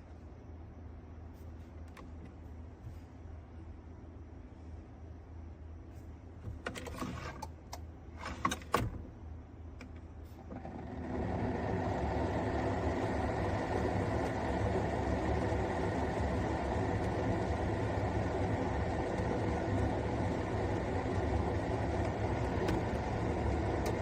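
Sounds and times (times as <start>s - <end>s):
coffee maker pump whirring: 10.6s - 24.0s.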